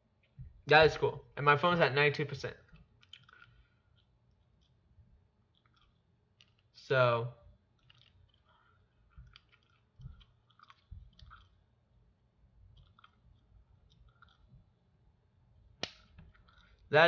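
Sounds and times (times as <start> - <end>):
faint clicks and soft taps: 2.6 - 6.8, 7.4 - 11.7, 12.6 - 15.0.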